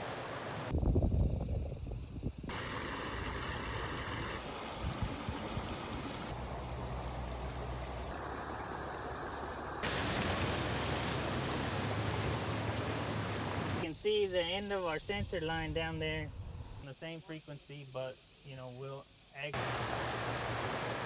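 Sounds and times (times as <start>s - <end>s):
rushing water: 0.0s - 0.7s, 2.5s - 13.9s, 19.6s - 21.0s.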